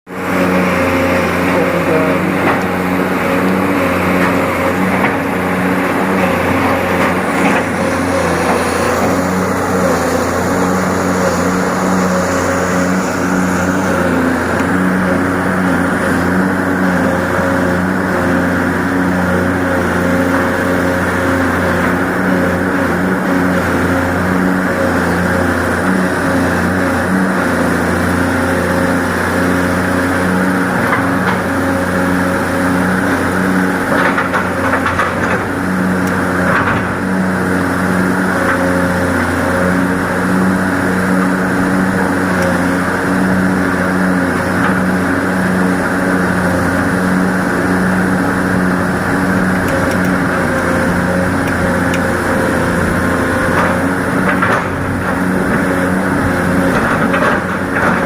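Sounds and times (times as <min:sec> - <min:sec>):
excavator diesel engine running: 0:00.1 - 0:58.0.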